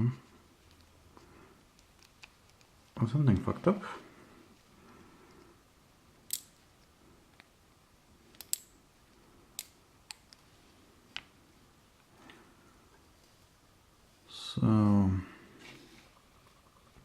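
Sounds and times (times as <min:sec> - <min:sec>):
small metallic clicks of lock parts: 0:06.2 - 0:07.5, 0:08.3 - 0:08.8, 0:09.6 - 0:10.5.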